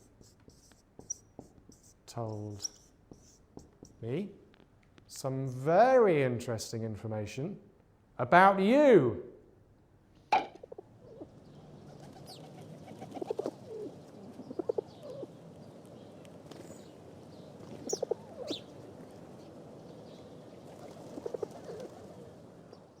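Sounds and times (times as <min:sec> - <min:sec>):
high bird calls: 0:10.4 - 0:23.0
pigeons cooing: 0:10.6 - 0:23.0.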